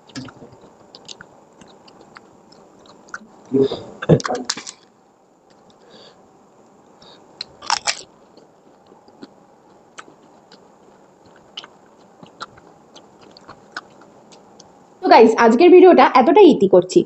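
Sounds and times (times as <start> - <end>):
quiet chewing: 0.0 - 6.0, 6.6 - 15.0
small mouth clicks: 0.1 - 3.3
crisp shell crunching: 7.4 - 14.1.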